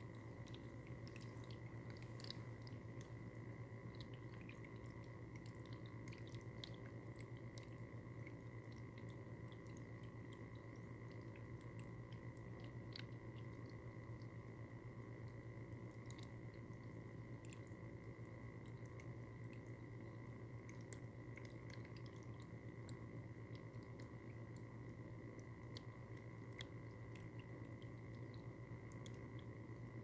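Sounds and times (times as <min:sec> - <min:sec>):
water dripping: 0:00.0 - 0:30.0.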